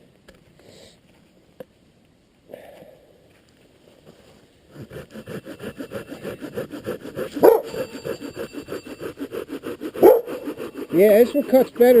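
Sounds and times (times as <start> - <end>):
saw cutting wood: 4.7 - 12.0
dog barking: 7.4 - 7.8, 10.0 - 10.4.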